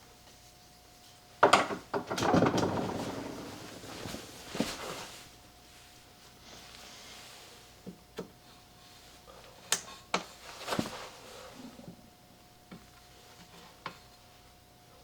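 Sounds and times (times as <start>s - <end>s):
objects clicking on hard surface: 1.5s - 4.4s.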